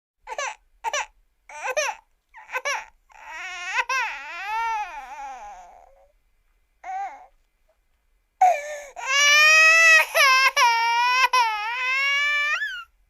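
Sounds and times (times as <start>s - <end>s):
cartoon crying sobs and wail: 9.0s - 12.8s.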